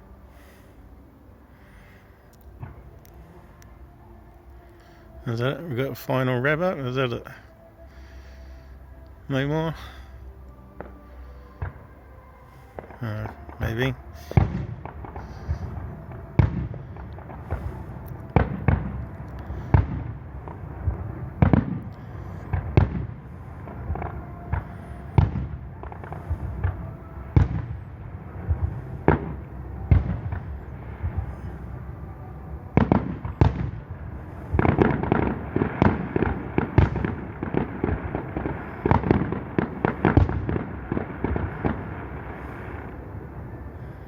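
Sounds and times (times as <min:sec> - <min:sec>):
fireworks bangs: 0:12.8 - 0:44.0.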